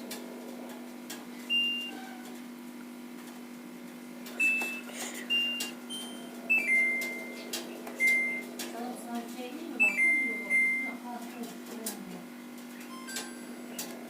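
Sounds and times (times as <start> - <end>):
steady low hum: 0.0 - 14.0
washing machine panel beeps: 1.5 - 2.2, 4.4 - 8.5, 9.7 - 11.1, 12.8 - 13.9.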